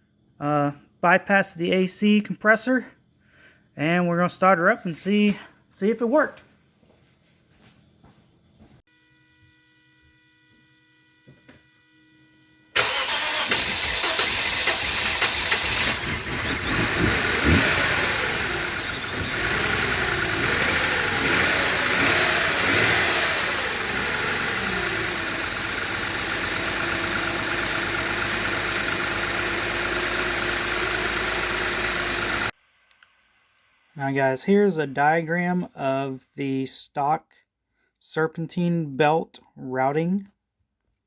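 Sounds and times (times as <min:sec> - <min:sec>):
car engine starting and idling: 0:12.8 - 0:32.5.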